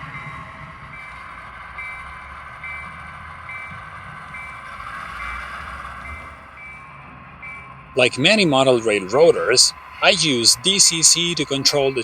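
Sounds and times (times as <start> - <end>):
locomotive bell ringing: 0.0 - 12.0
locomotive rumble: 0.0 - 12.0.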